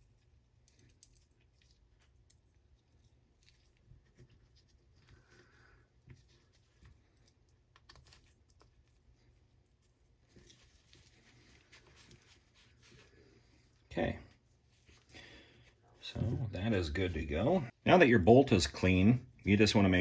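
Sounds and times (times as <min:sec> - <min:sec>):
small metal parts clicking: 0:00.5 - 0:02.5.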